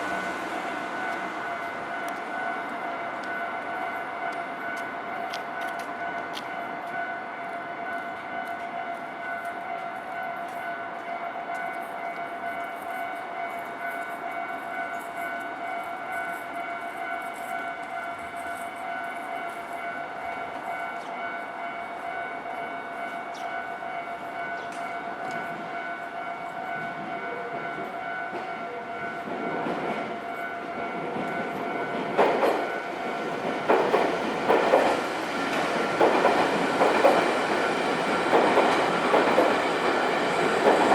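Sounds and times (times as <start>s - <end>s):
level-crossing alarm ringing: 0.0s - 40.9s
train running noise: 0.0s - 40.9s
train wheels clattering over rail joints: 30.8s - 40.9s.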